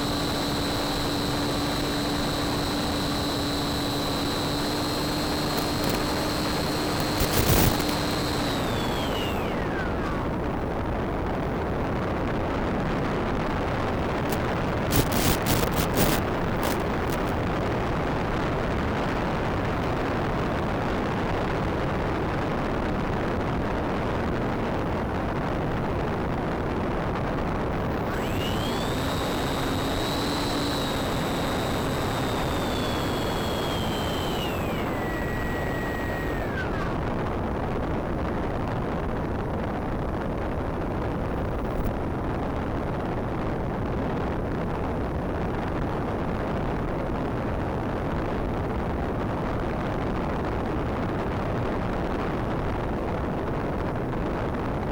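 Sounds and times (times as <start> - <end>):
electric motor whine: 0.0 - 10.7, 14.2 - 17.4, 27.7 - 37.5.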